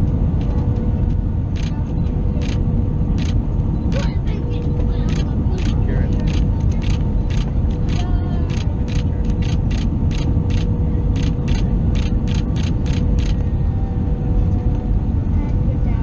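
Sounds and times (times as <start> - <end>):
aircraft cabin rumble: 0.0 - 16.0
sharp clicks or rattles: 5.1 - 13.4.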